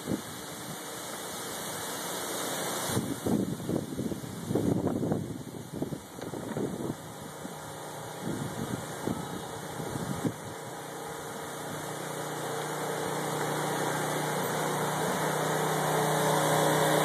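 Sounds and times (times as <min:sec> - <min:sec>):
wind gusts on microphone: 0:02.6 - 0:12.1
motor running: 0:04.6 - 0:17.0.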